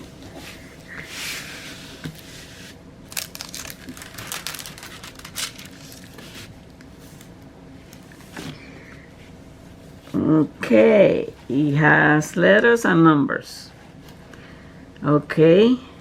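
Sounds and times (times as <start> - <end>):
plastic packaging crinkling: 3.0 - 6.4.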